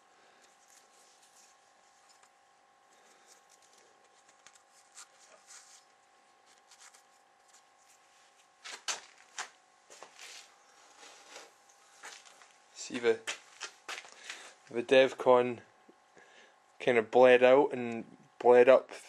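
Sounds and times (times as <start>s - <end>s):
faint steady hum: 0.0s - 19.0s
scratching and clicking handling noises: 0.4s - 14.4s.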